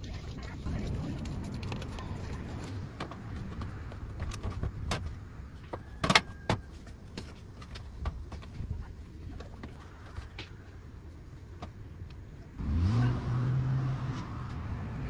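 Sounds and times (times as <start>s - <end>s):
clicks and knocks of objects: 0.4s - 10.6s.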